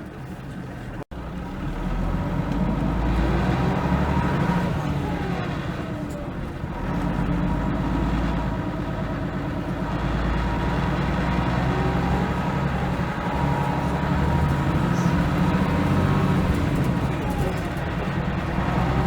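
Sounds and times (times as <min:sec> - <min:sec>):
bus diesel engine running: 0:00.0 - 0:19.0.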